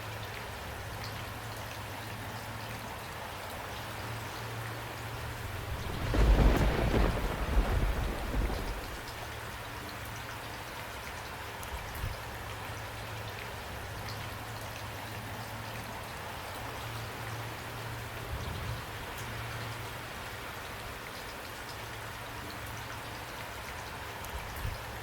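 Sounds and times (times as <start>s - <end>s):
steady rain falling: 0.0s - 25.0s
low rumble of thunder: 5.0s - 9.6s.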